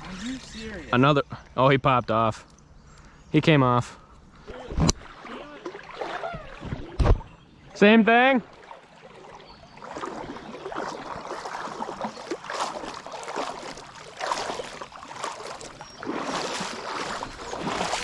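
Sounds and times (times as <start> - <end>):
river water splashing and rushing: 4.5 - 7.1, 7.8 - 18.0.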